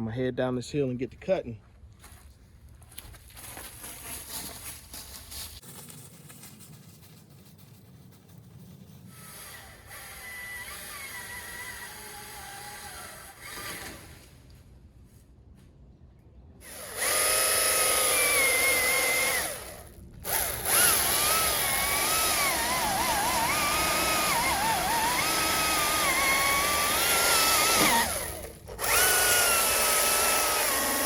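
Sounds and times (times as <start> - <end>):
electric chainsaw motor whining: 9.1 - 14.2, 16.6 - 31.0.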